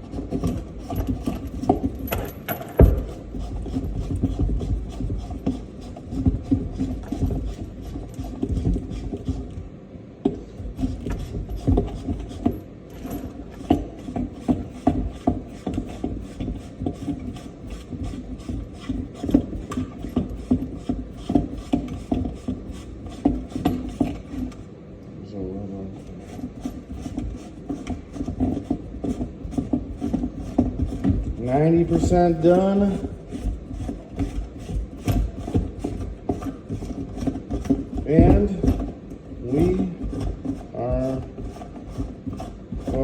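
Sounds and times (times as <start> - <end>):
rubbing and knocks against sink: 0.0 - 9.7, 10.3 - 24.6, 26.0 - 43.0.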